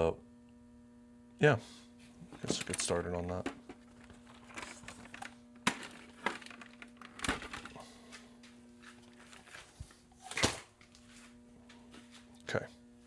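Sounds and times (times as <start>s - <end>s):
plastic clicks and knocks: 2.4s - 7.7s.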